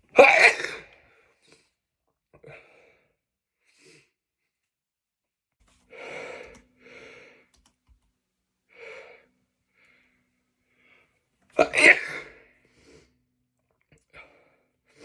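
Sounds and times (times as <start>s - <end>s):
person gasping before sneeze: 0.1s - 1.0s, 11.6s - 12.4s.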